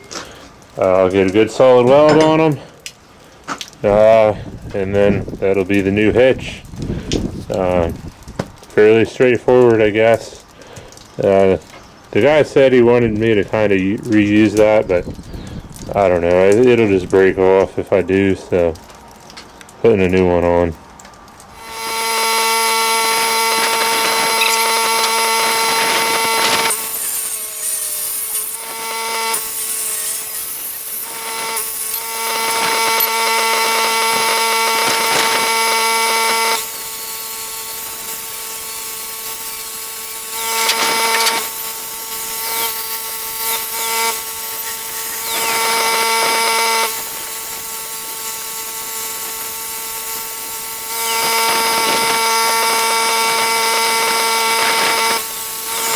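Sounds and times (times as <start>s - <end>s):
grinder disc grinding metal: 21.4s - 55.9s
angle grinder whining: 21.5s - 55.9s.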